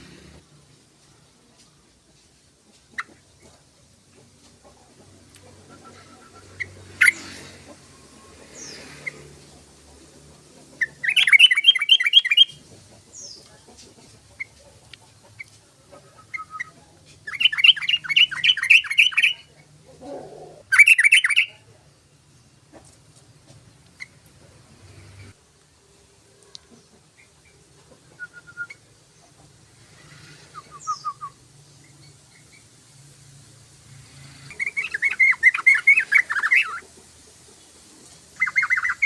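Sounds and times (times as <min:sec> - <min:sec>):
bird chirps: 0:10.7 - 0:13.4, 0:15.4 - 0:19.5, 0:20.7 - 0:21.6, 0:30.4 - 0:32.7, 0:34.5 - 0:36.9, 0:38.4 - 0:39.0.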